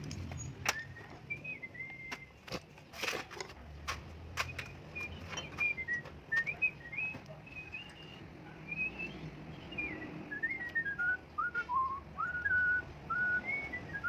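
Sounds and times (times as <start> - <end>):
person whistling a tune: 0.7 - 2.4, 4.4 - 14.0.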